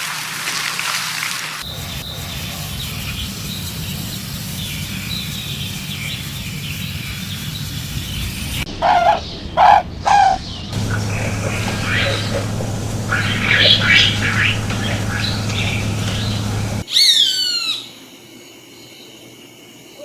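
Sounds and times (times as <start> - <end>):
faint high chirping: 10.8 - 16.8
steady low rumble: 10.8 - 16.8.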